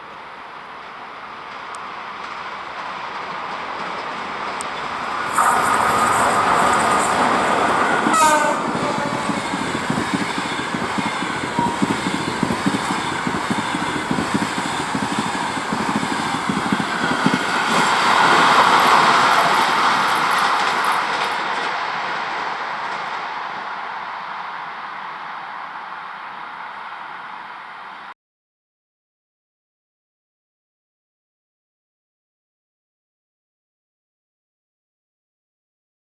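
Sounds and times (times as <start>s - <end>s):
train wheels clickety-clack: 0.2s - 24.5s
locomotive horn: 4.9s - 14.1s.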